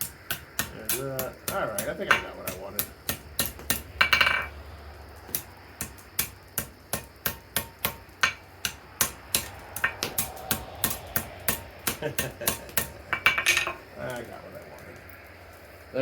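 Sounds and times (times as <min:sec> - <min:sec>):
hammer striking steel on anvil: 0:00.3 - 0:04.5, 0:05.3 - 0:13.8.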